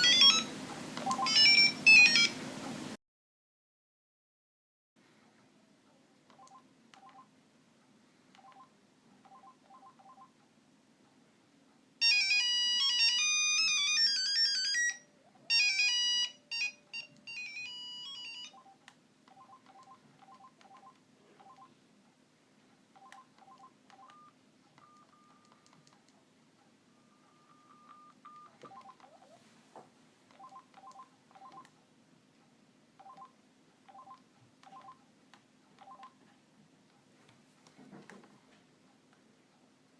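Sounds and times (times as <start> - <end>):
phone keypad beeps: 0.0 - 2.4, 6.3 - 7.3, 8.4 - 10.3, 12.0 - 21.7, 23.0 - 25.9, 26.9 - 29.3, 30.3 - 31.7, 33.0 - 35.0, 35.8 - 36.2
ringtone melody: 0.0 - 2.4, 12.0 - 21.7, 27.0 - 29.3.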